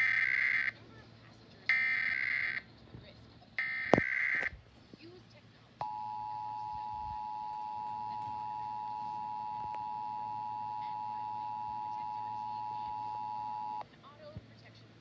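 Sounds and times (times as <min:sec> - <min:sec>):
two-tone alert signal: 0:05.8 - 0:13.8.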